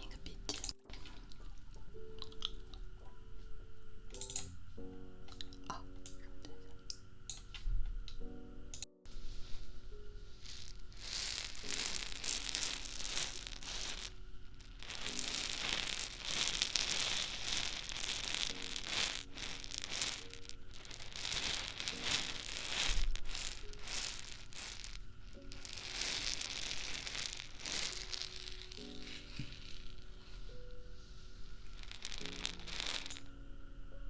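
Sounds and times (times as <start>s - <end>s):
quiet background music: 0.0s - 34.0s
prop crinkling and rattling: 10.4s - 30.3s, 31.6s - 33.2s.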